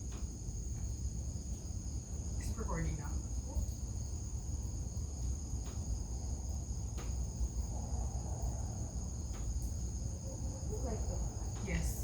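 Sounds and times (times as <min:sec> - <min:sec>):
insects chirring: 0:00.0 - 0:12.0
faint ticks: 0:05.2 - 0:05.9, 0:06.9 - 0:07.2, 0:09.3 - 0:09.8.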